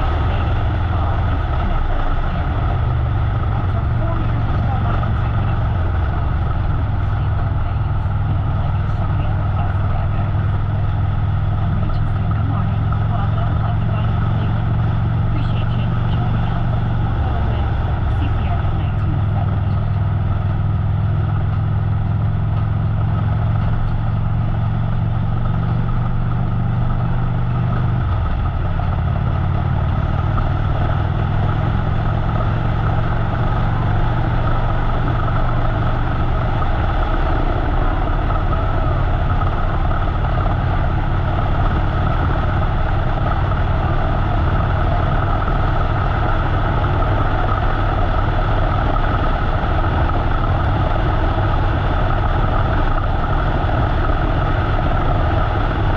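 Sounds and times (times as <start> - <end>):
motorcycle engine running: 0.0 - 55.9
wind and road rush: 0.0 - 55.9.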